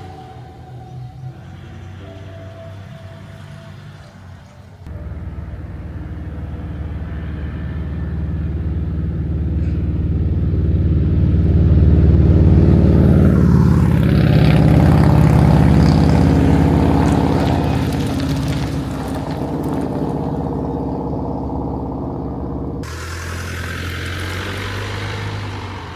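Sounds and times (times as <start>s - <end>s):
engine passing by: 0.0s - 25.9s.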